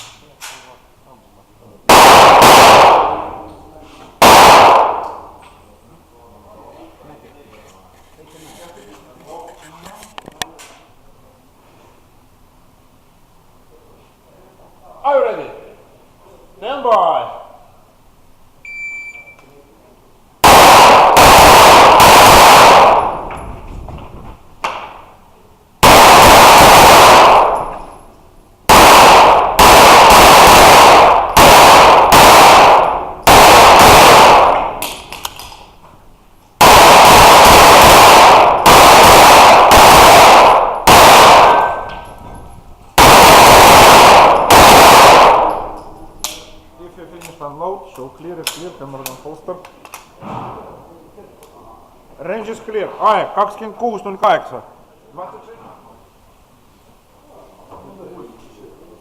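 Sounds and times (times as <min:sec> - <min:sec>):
rapid pistol fire: 0:01.9 - 0:03.4, 0:04.2 - 0:05.4, 0:20.4 - 0:23.4, 0:25.8 - 0:28.0, 0:28.7 - 0:35.6, 0:36.6 - 0:42.1, 0:43.0 - 0:45.8
shot timer beep: 0:18.6 - 0:19.5.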